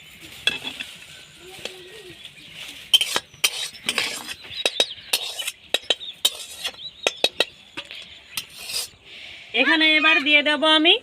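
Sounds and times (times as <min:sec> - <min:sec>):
spoon clinking and scraping cookware: 0:02.9 - 0:08.9.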